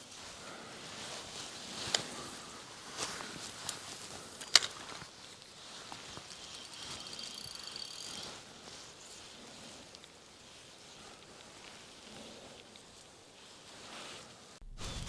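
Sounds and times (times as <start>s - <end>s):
fishing reel ticking whir: 6.2s - 8.4s.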